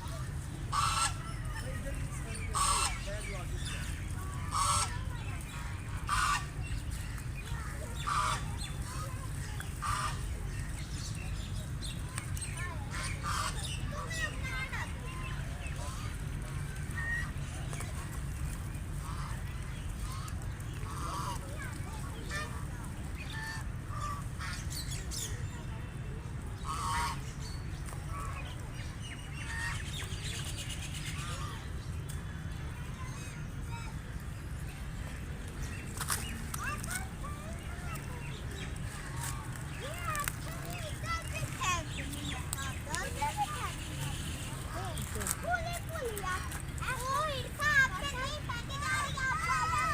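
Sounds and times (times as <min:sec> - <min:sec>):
ducks calling harshly: 0:00.6 - 0:06.9, 0:07.6 - 0:10.9, 0:12.8 - 0:14.8, 0:19.0 - 0:22.6, 0:23.2 - 0:25.3, 0:26.6 - 0:27.6, 0:28.2 - 0:30.3, 0:30.9 - 0:31.7.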